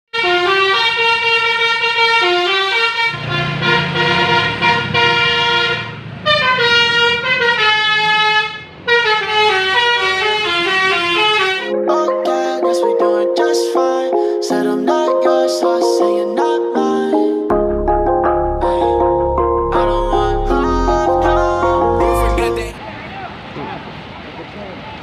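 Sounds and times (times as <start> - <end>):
multi-tone bus horn melody: 0.1 - 13.9, 14.6 - 22.8
plucked-string music: 17.5 - 22.8.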